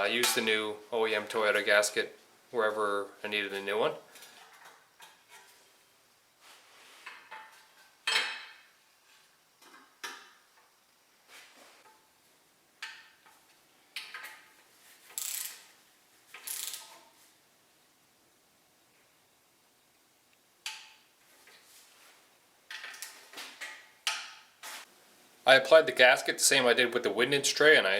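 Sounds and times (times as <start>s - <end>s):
tools and metal parts clinking: 7.2s - 8.7s, 15.1s - 15.7s.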